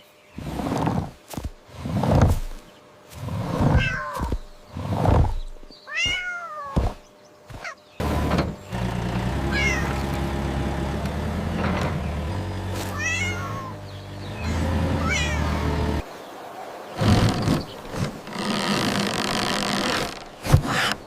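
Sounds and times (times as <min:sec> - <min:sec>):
cat meowing: 0:03.8 - 0:04.3, 0:05.9 - 0:06.8, 0:09.5 - 0:10.0, 0:12.9 - 0:13.8, 0:14.5 - 0:15.6.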